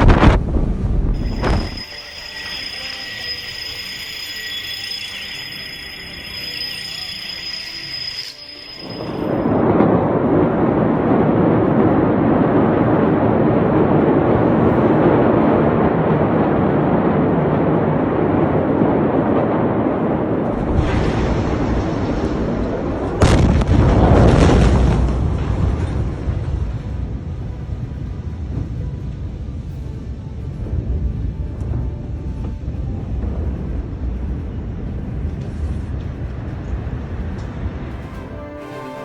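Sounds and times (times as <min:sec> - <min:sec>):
explosion rumble: 0:00.0 - 0:01.8, 0:09.4 - 0:38.1
sharp explosion blast: 0:00.0 - 0:01.8, 0:20.5 - 0:26.6.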